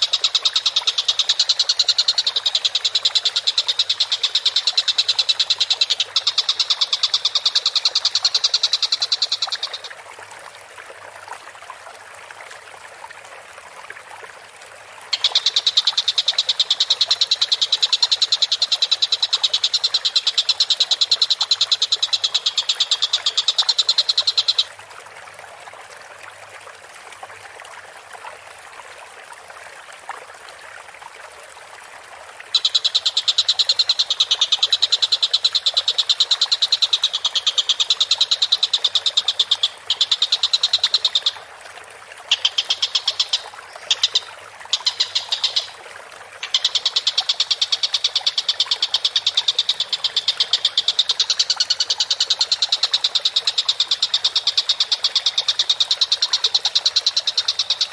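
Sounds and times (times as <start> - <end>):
kingfisher rattling calls: 0.0 - 9.9, 32.5 - 41.4, 42.3 - 45.8, 46.5 - 57.9.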